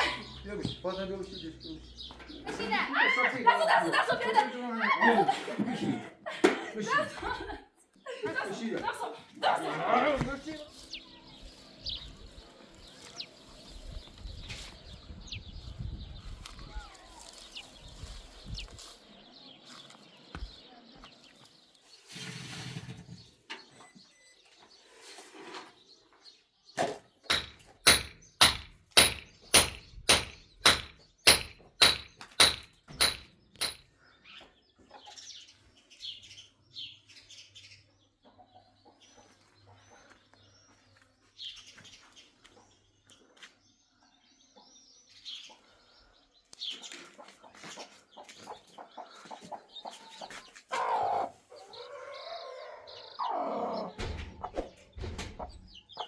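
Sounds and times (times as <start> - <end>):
sharp ringing strikes: 27.3 - 33.8.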